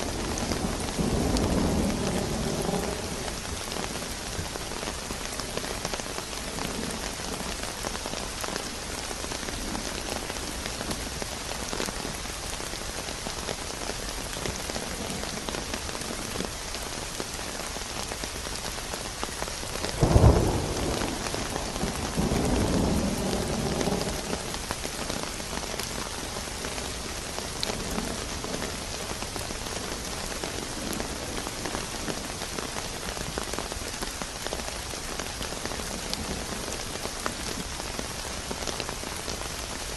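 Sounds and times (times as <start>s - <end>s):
thunderclap rolling rumble: 0.0s - 4.6s, 20.0s - 32.5s
heavy rain falling: 0.0s - 39.9s.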